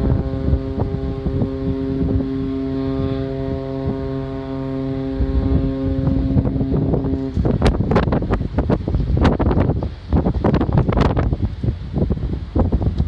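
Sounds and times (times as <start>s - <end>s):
ship horn blast: 0.0s - 9.4s
wind buffeting microphone: 0.0s - 13.0s.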